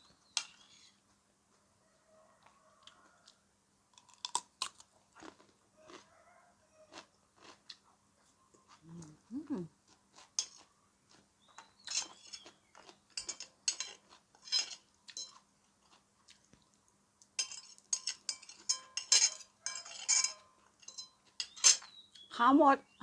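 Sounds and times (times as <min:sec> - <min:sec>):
utensils scraping a plate: 0:11.8 - 0:12.6, 0:13.2 - 0:15.3, 0:17.4 - 0:22.0.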